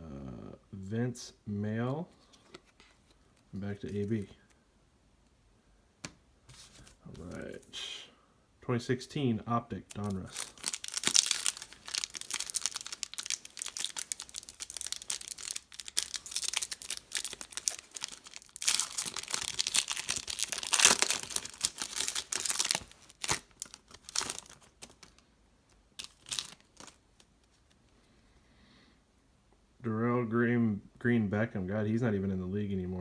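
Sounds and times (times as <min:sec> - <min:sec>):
foil wrapper tearing and crinkling: 0:09.9 - 0:25.2, 0:26.0 - 0:27.6.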